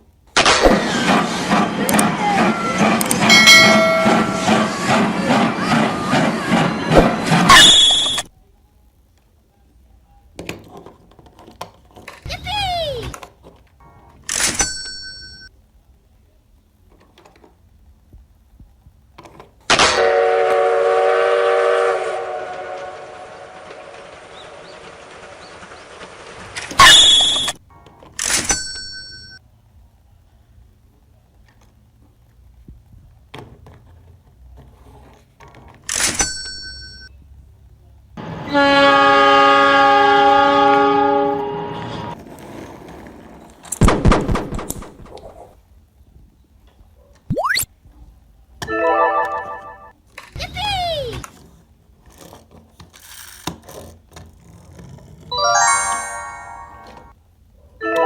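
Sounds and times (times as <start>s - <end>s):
electronic chime: 55.4s - 57.1s.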